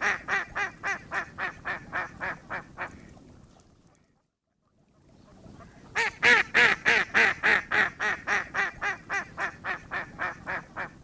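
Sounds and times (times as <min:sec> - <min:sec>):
duck quacking: 0:00.0 - 0:03.0, 0:05.6 - 0:11.0.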